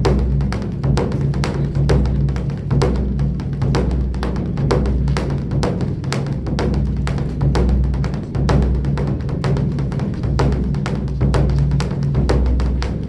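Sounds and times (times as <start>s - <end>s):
large drum beaten rapidly: 0.0s - 13.0s.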